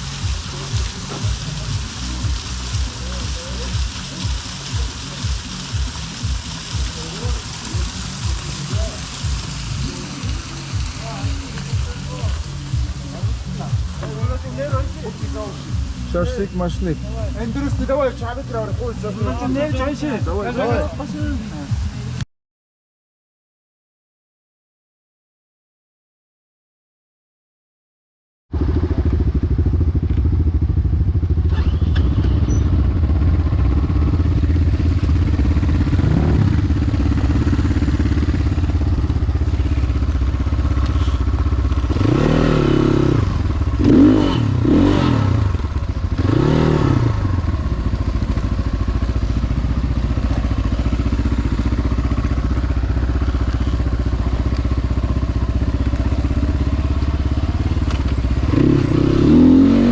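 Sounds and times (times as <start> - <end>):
motorcycle engine revving: 28.5 - 59.9.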